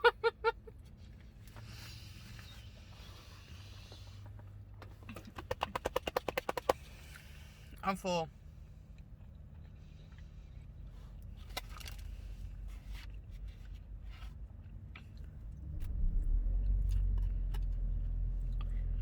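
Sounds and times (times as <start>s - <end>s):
low steady rumble: 6.7s - 19.0s.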